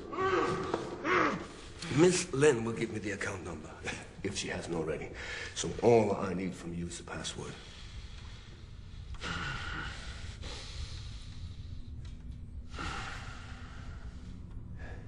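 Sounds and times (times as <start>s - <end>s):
man breathing heavily in pain: 7.6s - 15.0s.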